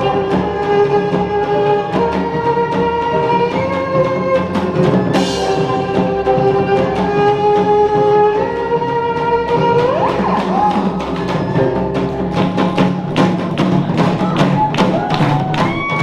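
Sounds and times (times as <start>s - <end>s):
orchestral strings: 10.8s - 16.0s
steady percussive beat: 12.0s - 16.0s.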